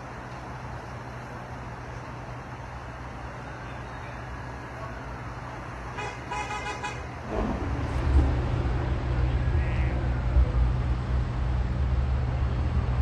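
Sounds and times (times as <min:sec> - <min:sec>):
road traffic: 0:00.0 - 0:13.0
vehicle horn: 0:06.0 - 0:07.1
low rumble: 0:07.2 - 0:13.0.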